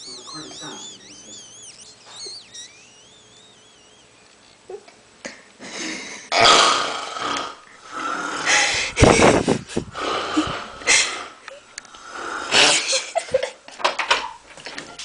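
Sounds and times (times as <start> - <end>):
person snoring: 5.8 - 8.9.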